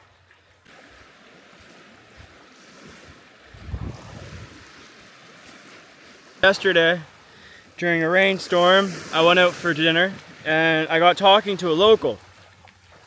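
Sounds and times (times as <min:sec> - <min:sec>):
ocean surf on a beach: 0:00.0 - 0:13.0
wind buffeting microphone: 0:00.7 - 0:06.5.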